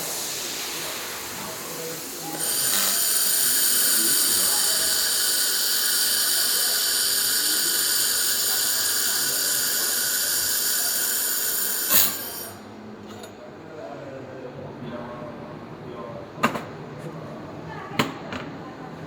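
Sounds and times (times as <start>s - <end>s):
laser welder hissing: 0.0s - 12.6s.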